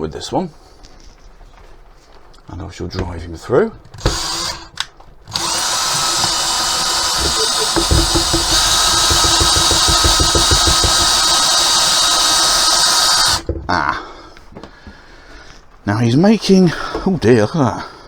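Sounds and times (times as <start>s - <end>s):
power drill driving a screw: 3.9s - 13.5s
rapid low knocking: 5.3s - 13.5s.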